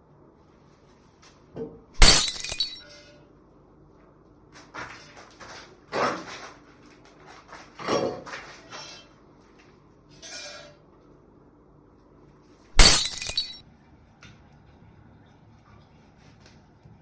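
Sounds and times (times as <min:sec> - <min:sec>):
loud shattering crash: 0:02.0 - 0:03.0, 0:12.8 - 0:13.6.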